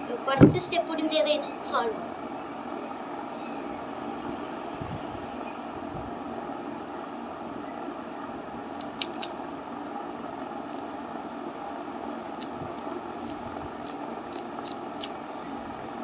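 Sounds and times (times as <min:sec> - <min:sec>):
steady background hum: 0:00.0 - 0:16.0
plastic cube layers clicking: 0:08.8 - 0:09.3, 0:12.4 - 0:15.2.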